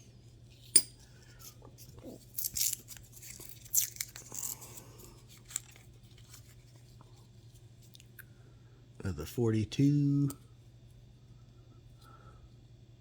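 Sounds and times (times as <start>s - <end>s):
paper wrapper rustling and crinkling: 1.8s - 7.0s.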